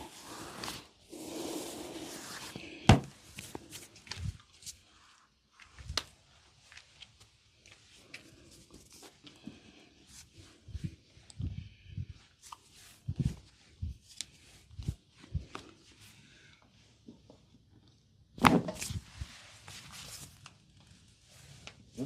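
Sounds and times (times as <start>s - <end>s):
soft low massage thumps: 13.0s - 14.1s, 14.7s - 15.7s.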